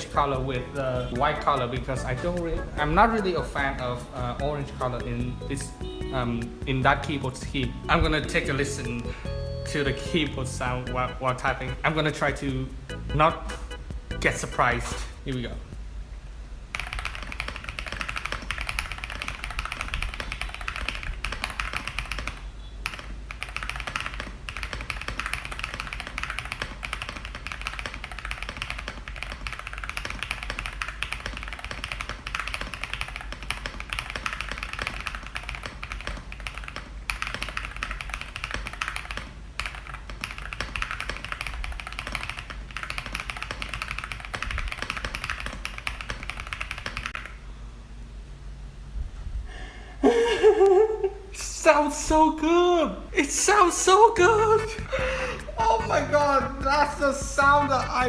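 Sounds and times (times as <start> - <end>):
mechanical keyboard typing: 16.7 - 47.3.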